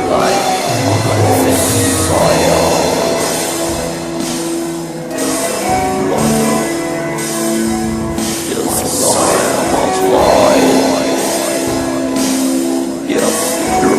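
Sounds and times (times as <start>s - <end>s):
distorted electric guitars: 0.6s - 4.8s
drums: 0.6s - 13.9s.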